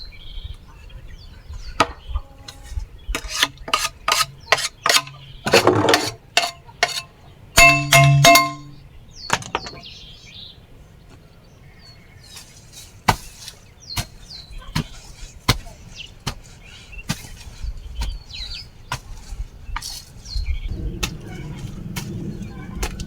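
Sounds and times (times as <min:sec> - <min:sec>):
small birds chirping: 0:00.0 - 0:23.0
garden tool chopping soil: 0:03.2 - 0:07.0, 0:12.3 - 0:20.3, 0:21.0 - 0:23.0.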